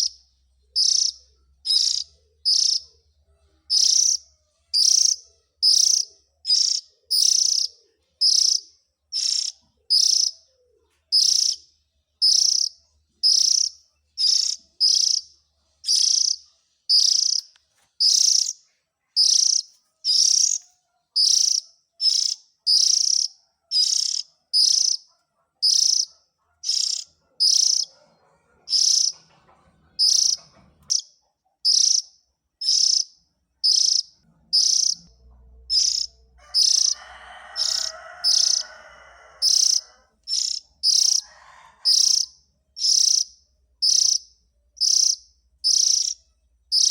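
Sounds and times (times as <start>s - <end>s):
bird harsh chirps: 0.0s - 3.0s, 3.7s - 10.5s, 11.1s - 28.1s, 28.7s - 29.3s, 30.0s - 46.9s.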